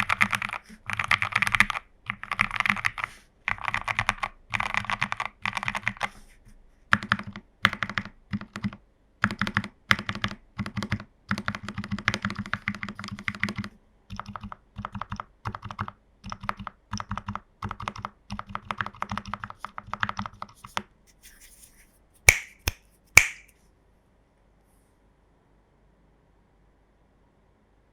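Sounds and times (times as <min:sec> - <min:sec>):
mechanical keyboard typing: 0:00.0 - 0:06.1, 0:06.9 - 0:20.8
sharp loud clicks: 0:22.3 - 0:23.5.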